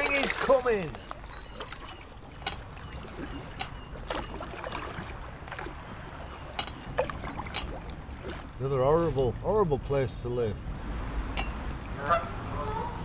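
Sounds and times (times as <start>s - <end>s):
paddle strokes splashing water: 0.0s - 9.5s.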